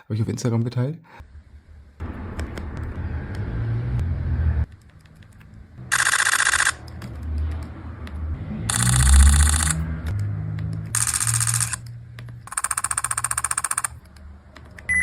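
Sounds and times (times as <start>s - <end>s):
camera shutter clicks in bursts: 5.9s - 6.9s, 8.7s - 9.8s, 10.9s - 11.8s, 12.5s - 14.0s.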